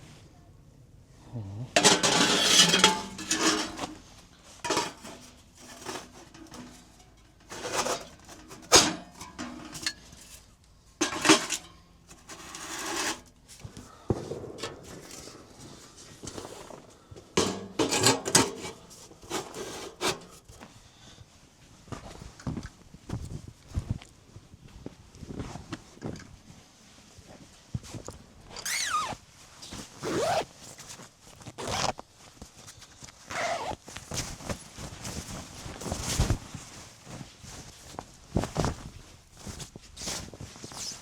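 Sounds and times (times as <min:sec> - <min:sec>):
pots and utensils clattering: 0:01.8 - 0:10.4, 0:11.0 - 0:13.3, 0:17.4 - 0:20.3
scraping and rubbing: 0:01.8 - 0:13.7, 0:14.3 - 0:20.4.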